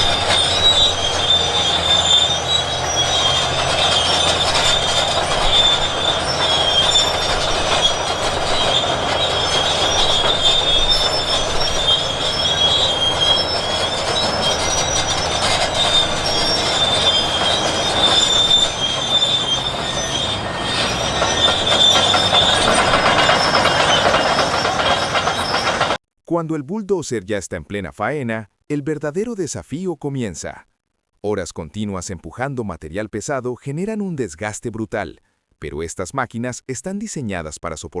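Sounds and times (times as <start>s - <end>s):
crawler tracks squealing: 0.0s - 26.0s
steady machine noise: 0.0s - 26.0s.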